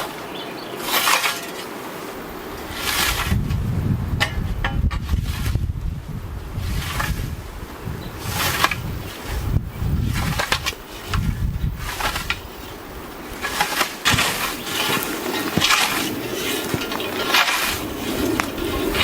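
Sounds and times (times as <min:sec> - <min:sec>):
scythe swishing through grass: 0:00.8 - 0:02.1, 0:02.7 - 0:03.5, 0:05.0 - 0:05.7, 0:06.6 - 0:07.4, 0:08.2 - 0:12.5, 0:13.3 - 0:19.0
wind rumbling on microphone: 0:02.0 - 0:19.0.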